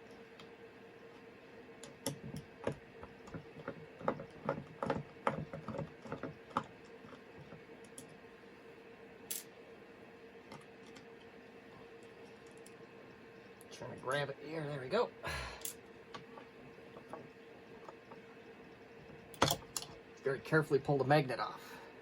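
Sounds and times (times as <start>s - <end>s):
faint steady hum: 0.0s - 22.0s
hand tools clicking and tapping: 1.8s - 8.1s.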